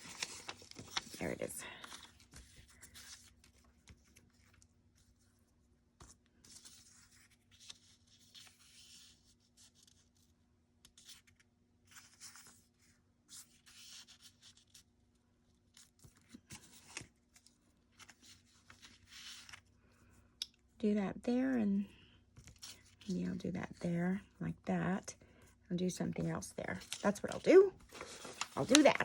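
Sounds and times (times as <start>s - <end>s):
paper rustling and ticking: 0.0s - 4.7s, 26.7s - 29.0s.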